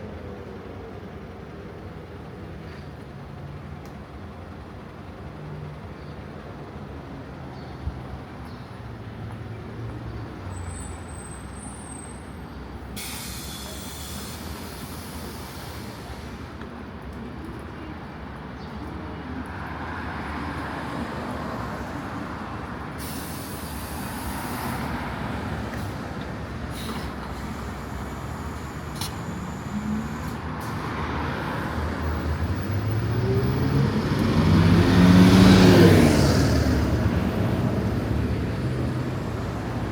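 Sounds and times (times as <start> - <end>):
passing vehicles: 0.0 - 39.9
traffic hiss: 10.5 - 17.0, 21.7 - 39.9
vehicle engine approaching: 29.7 - 39.9.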